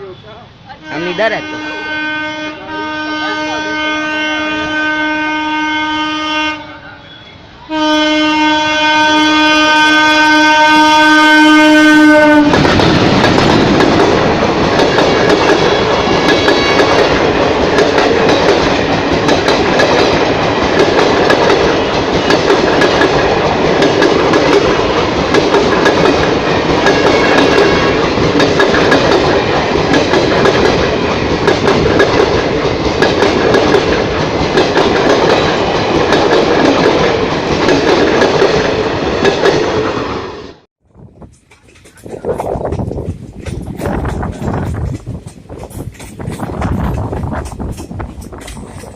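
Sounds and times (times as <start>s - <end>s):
train passing with loud rush: 0.0s - 48.9s
train horn blasts: 0.8s - 13.0s, 26.8s - 28.1s
wheels clacking over rail joints: 12.2s - 40.1s, 41.2s - 48.9s.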